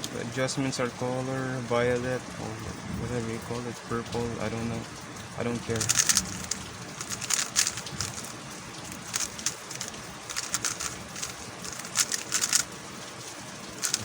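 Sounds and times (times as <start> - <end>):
puzzle cube plastic clicks: 5.8 - 12.7, 13.8 - 14.0.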